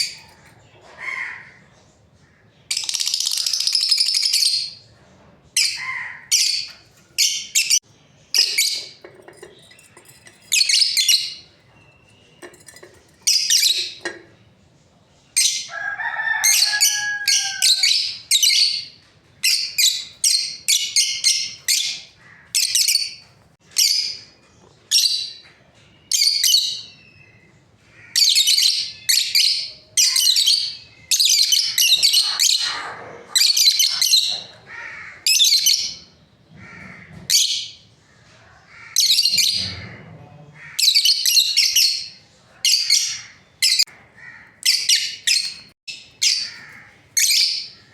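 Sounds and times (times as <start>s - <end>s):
lovebirds chirping shrilly: 42.8s - 47.9s.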